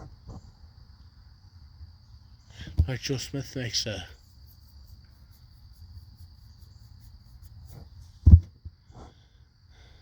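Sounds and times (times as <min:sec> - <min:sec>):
dull thump: 0:08.2 - 0:08.7.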